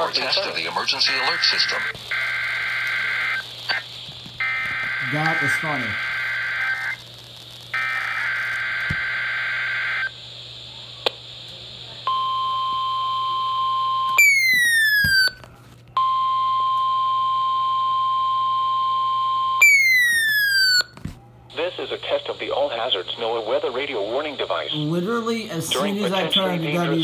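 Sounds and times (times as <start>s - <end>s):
steady alarm tone: 4.4s - 6.9s, 12.1s - 15.4s, 16.0s - 21.0s
warbling digital data tones: 4.4s - 7.0s.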